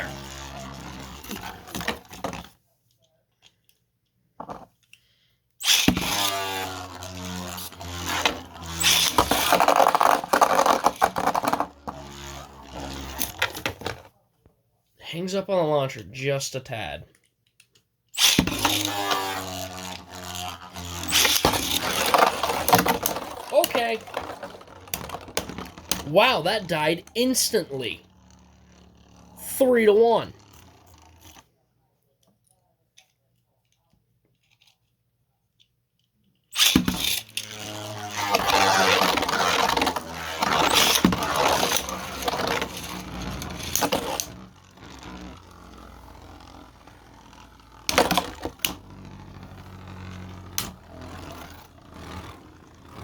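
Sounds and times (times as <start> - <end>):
spinning tops whirring and scraping: 0.0 - 2.5, 5.6 - 14.1, 18.1 - 31.4, 36.5 - 53.0
low whir: 37.4 - 53.0.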